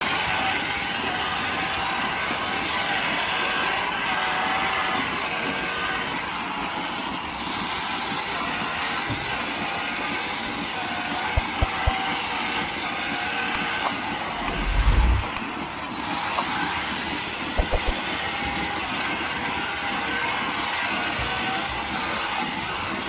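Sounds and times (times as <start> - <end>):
machinery noise: 11.4 - 12.0, 13.6 - 16.5.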